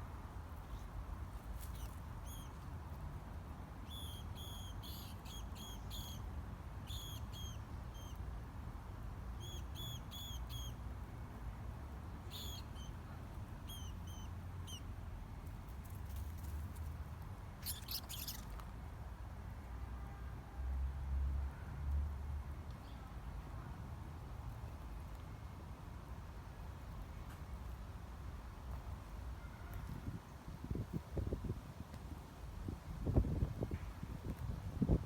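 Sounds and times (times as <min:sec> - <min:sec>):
mouse squeaking: 0:01.6 - 0:02.6, 0:03.9 - 0:06.2, 0:06.9 - 0:08.2, 0:12.3 - 0:12.9, 0:13.7 - 0:14.8, 0:17.6 - 0:18.6.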